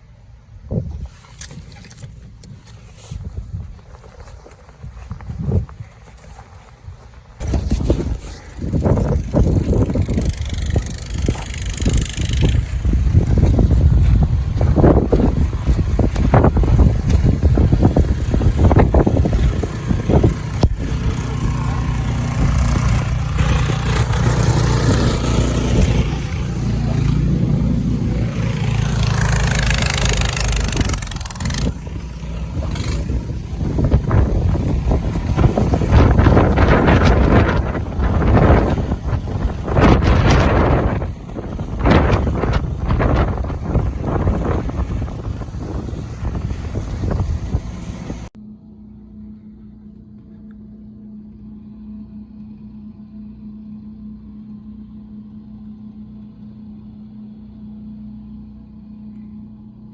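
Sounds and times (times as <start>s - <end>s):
tractor engine rumbling: 0.0s - 59.9s
wind noise on microphone: 0.5s - 6.2s, 6.8s - 48.3s.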